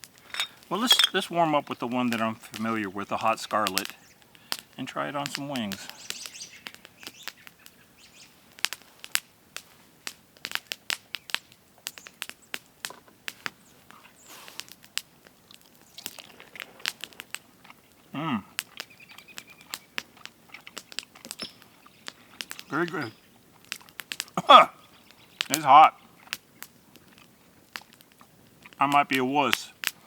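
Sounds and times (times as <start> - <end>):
person chewing with wet smacks: 13.4 - 28.8.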